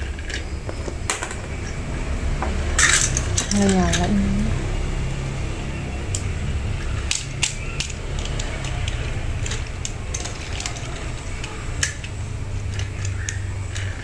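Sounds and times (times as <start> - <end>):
toy train motor hum: 0.0 - 14.0
plastic clicks and clacks: 6.1 - 14.0.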